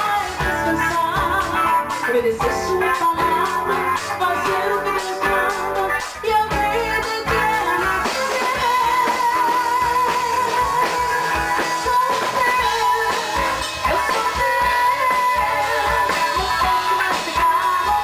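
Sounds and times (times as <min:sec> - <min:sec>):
rock song with electric guitars: 0:00.0 - 0:18.0.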